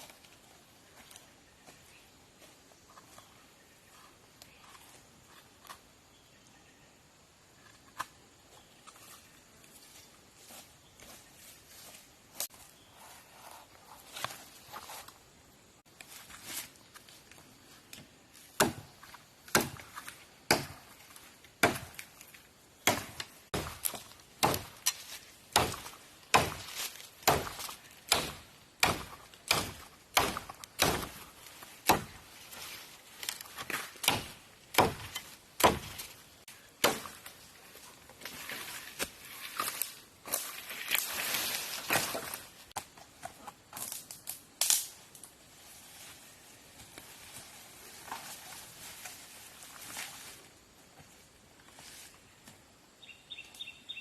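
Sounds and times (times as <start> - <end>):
wood chopping blows: 22.8 - 32.3, 33.4 - 36.1.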